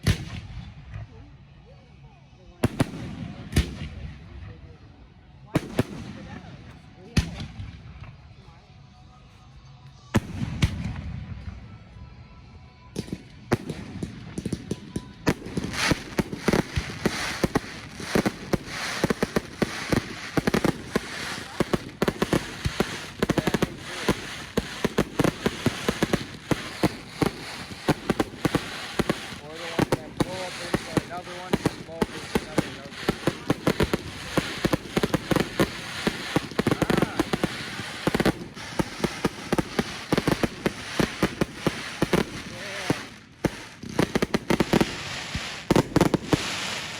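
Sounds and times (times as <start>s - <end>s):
fireworks crackling: 13.0s - 46.9s.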